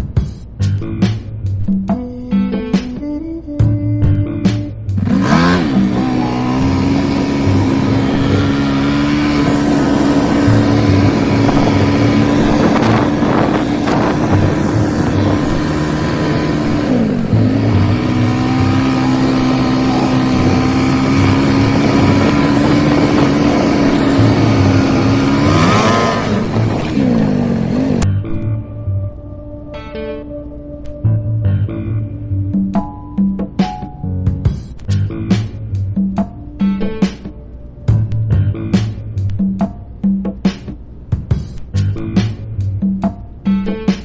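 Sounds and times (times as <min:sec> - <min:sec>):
vehicle engine at high revs: 0:05.0 - 0:28.1.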